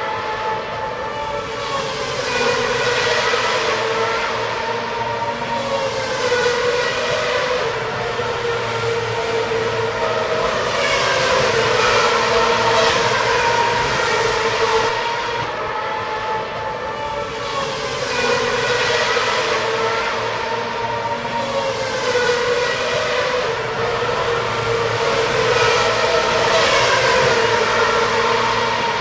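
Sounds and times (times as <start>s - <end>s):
drone of engines: 0.0s - 29.0s
racing cars passing: 0.0s - 29.0s.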